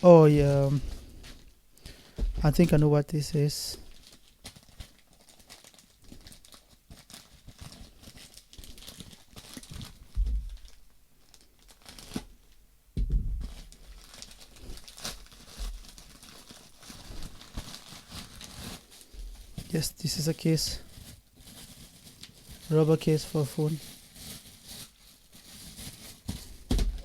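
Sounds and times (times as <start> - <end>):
dull thumps: 2.2 - 2.5, 10.1 - 10.8, 13.0 - 13.7, 26.6 - 27.0
packaging tearing and crinkling: 3.9 - 12.3, 13.4 - 19.8, 20.5 - 27.0.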